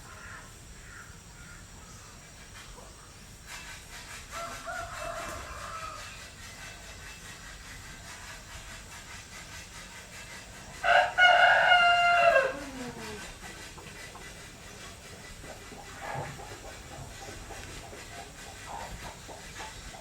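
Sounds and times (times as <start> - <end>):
steady background hiss: 0.0 - 20.0
rooster crowing: 4.3 - 6.2, 10.8 - 13.2.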